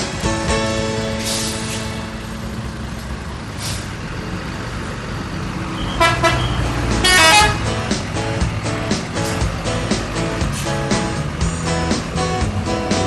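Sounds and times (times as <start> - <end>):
bus engine running: 0.0 - 13.0
traffic: 0.0 - 13.0
multi-tone bus horn blasts: 5.7 - 7.9.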